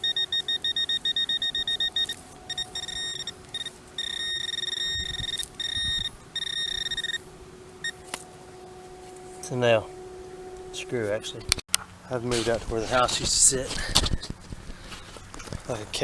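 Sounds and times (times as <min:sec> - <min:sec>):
metal detector beeping: 0:00.0 - 0:07.2, 0:07.8 - 0:08.2.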